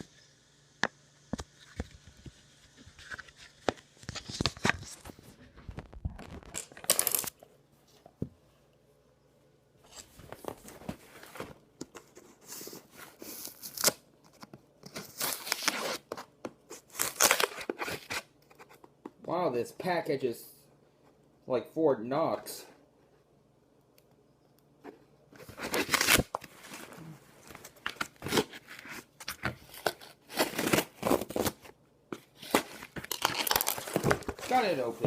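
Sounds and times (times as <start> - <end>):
cardboard tearing and scraping: 12.6 - 14.0, 14.9 - 16.2, 16.8 - 18.3, 25.4 - 31.7, 32.3 - 35.0.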